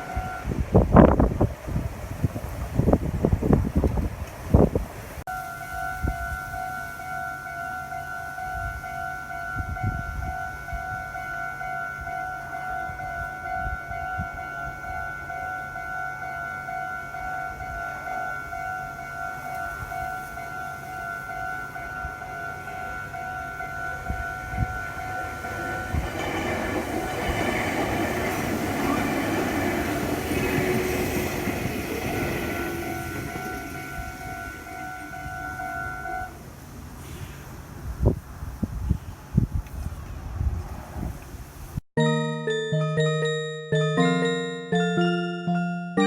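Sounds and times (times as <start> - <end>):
level crossing warning bell: 0.0 - 1.2, 5.3 - 36.4, 42.0 - 46.0
train passing: 0.0 - 37.0.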